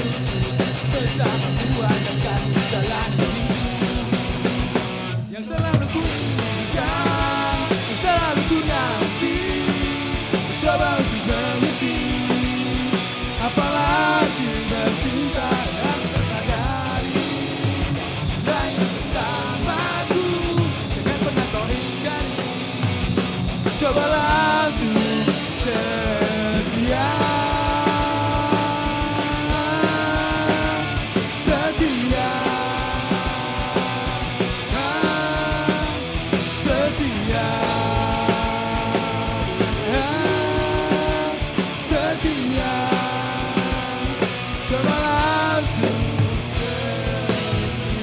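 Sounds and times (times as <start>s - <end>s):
live rock band playing: 0.0s - 48.0s.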